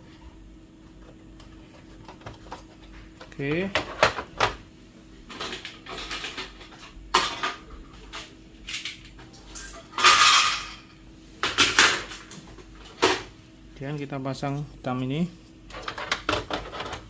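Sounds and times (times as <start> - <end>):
plastic parts clicking and knocking: 15.7 - 17.0.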